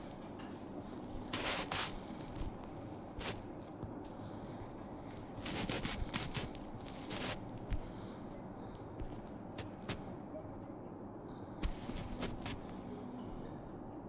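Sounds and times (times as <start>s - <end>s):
rustling fluttering noise: 0.0s - 8.1s, 11.6s - 12.8s
small birds chirping: 0.0s - 14.0s.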